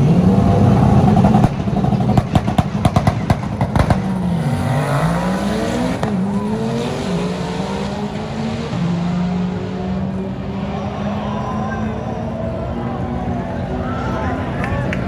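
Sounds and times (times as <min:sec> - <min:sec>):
sharp exhaust cracks: 0:00.0 - 0:06.5
drag car engine revving: 0:00.0 - 0:14.5.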